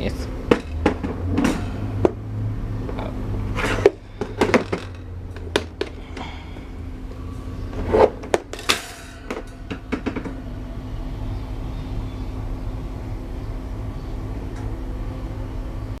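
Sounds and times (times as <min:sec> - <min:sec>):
knocks and clatter of fan handling: 0:00.0 - 0:10.6
fan motor hum: 0:00.0 - 0:16.0.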